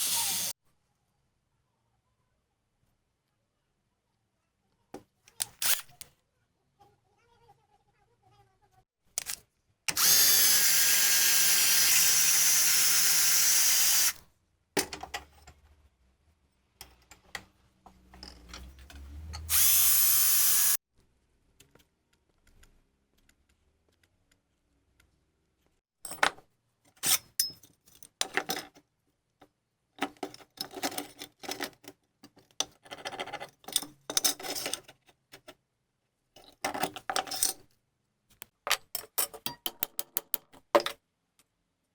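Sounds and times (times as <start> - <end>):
power tool whining: 0.0 - 0.5.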